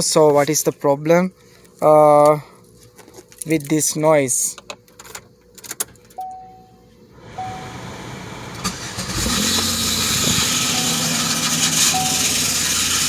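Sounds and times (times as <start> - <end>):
car warning chime: 6.2 - 6.8, 7.4 - 7.8, 10.6 - 11.2, 11.9 - 12.6
car engine cranking and running: 7.2 - 13.0
loud hissing from engine bay: 7.2 - 13.0.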